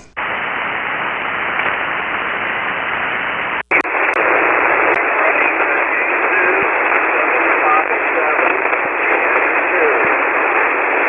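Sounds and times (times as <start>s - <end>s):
radio band noise hiss: 0.0s - 11.0s
radio clicks: 3.6s - 11.0s
distant radio station voice: 4.2s - 10.3s.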